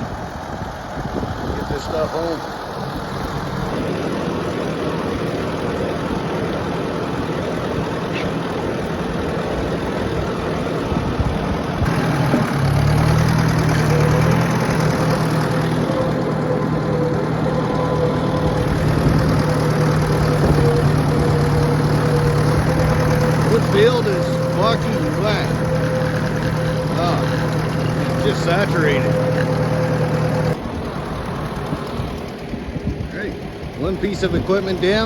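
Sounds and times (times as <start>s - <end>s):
tractor engine running: 0.0s - 35.0s.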